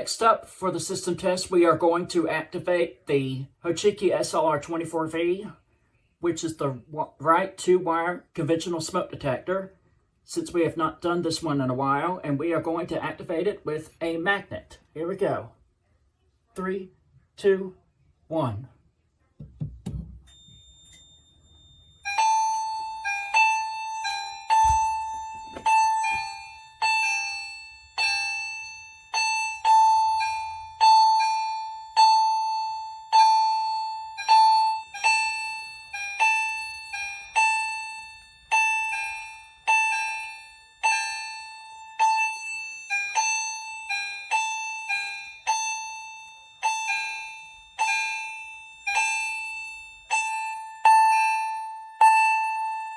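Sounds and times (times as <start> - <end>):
fire alarm chimes ringing: 20.1 - 52.9.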